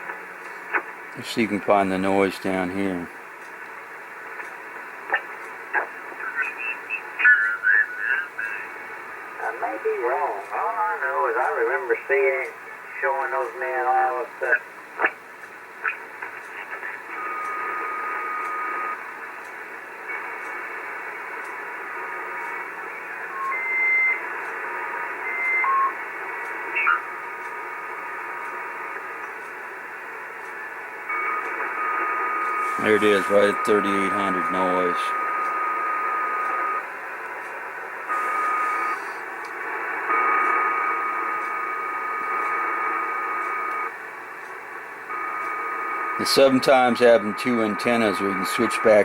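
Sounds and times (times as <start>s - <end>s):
radio static hiss: 0.0s - 49.0s
radio whistles: 5.2s - 8.7s, 16.8s - 19.0s, 21.8s - 28.6s, 31.1s - 36.9s, 38.1s - 43.9s, 45.1s - 49.0s.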